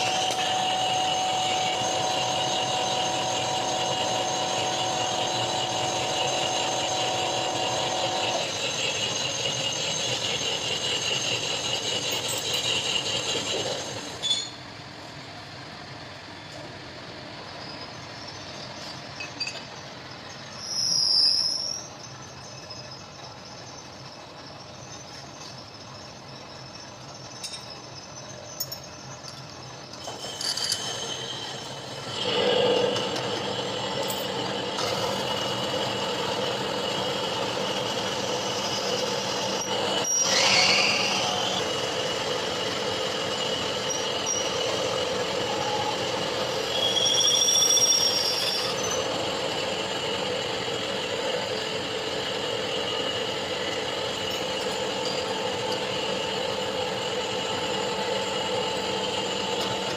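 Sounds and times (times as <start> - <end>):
machine tool cutting metal: 0.0 - 14.6, 29.9 - 59.9.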